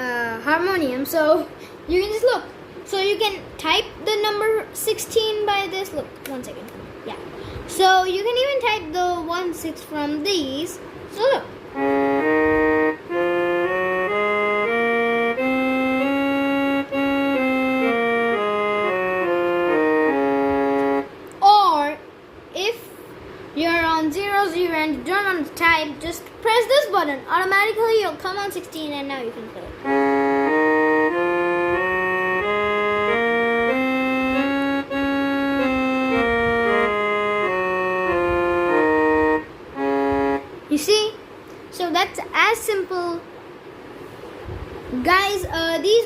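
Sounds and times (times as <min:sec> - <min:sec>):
electronic keyboard organ tune: 0:11.7 - 0:21.2, 0:29.8 - 0:40.6.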